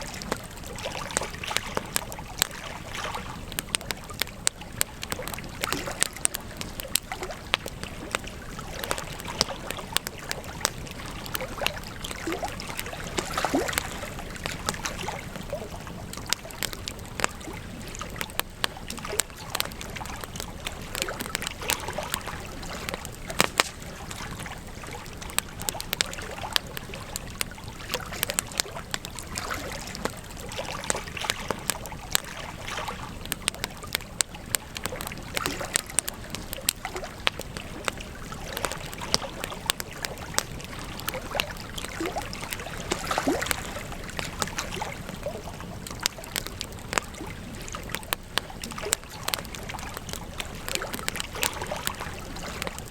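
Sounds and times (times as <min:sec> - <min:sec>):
campfire crackling and popping: 0:00.0 - 0:52.9.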